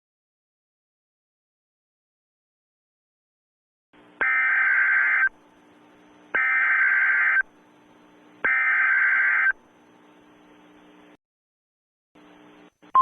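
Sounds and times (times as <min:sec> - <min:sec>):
digital data tone bursts: 0:04.2 - 0:05.3, 0:06.4 - 0:07.5, 0:08.4 - 0:09.6.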